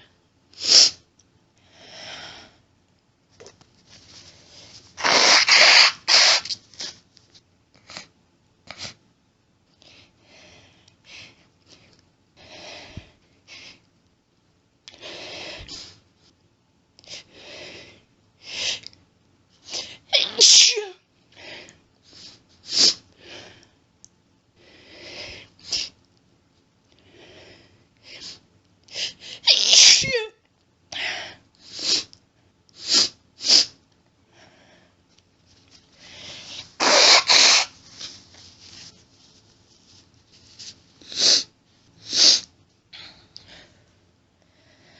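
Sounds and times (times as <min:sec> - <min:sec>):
woman sneezing: 0:20.1 - 0:21.0, 0:29.4 - 0:30.4, 0:36.8 - 0:37.7.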